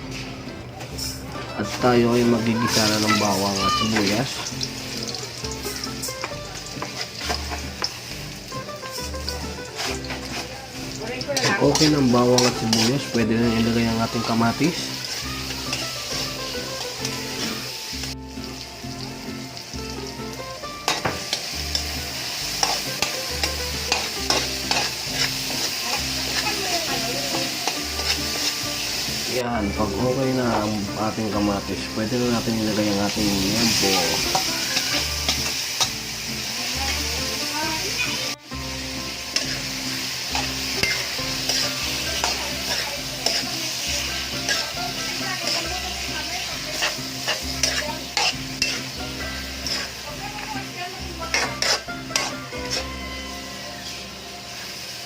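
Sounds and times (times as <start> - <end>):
spatula scraping pan: 0.0 - 18.4, 20.2 - 29.2, 32.4 - 54.1
food sizzling in oil: 0.0 - 55.0
utensil clicking against pan: 22.6 - 26.6, 40.4 - 50.0, 51.3 - 52.9.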